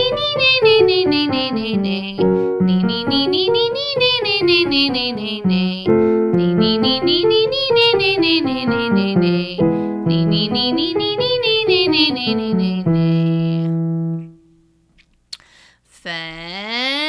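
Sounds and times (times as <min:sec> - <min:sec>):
person singing vocal warm-up: 0:00.0 - 0:13.9
piano accompaniment: 0:00.0 - 0:14.8.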